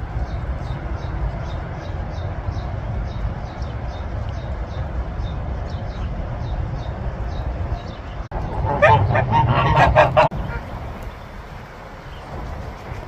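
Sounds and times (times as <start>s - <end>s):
birds chirping: 0.0s - 13.0s
loud low rumble: 4.6s - 10.8s.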